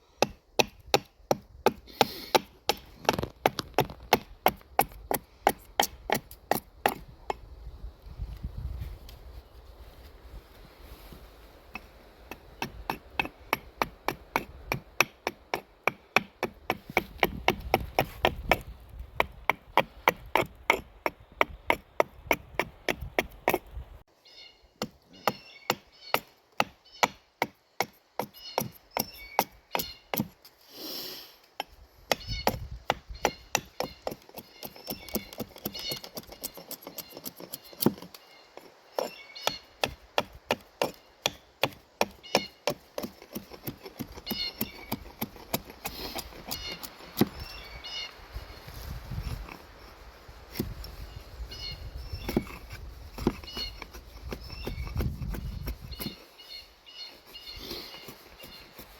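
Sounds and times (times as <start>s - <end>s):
axe chopping wood: 0.2s - 7.1s, 11.7s - 23.6s, 24.8s - 30.4s, 39.0s - 47.4s.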